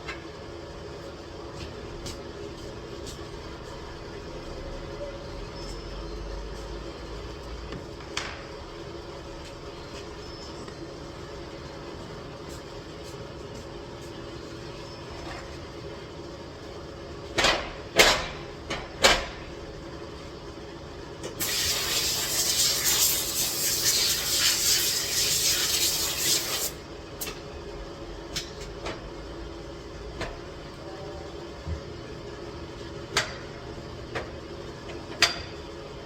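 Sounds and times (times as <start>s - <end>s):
constant low hum: 0.0s - 36.0s
short hissing blasts: 21.4s - 26.8s
steady hiss of air or spray: 21.4s - 26.8s.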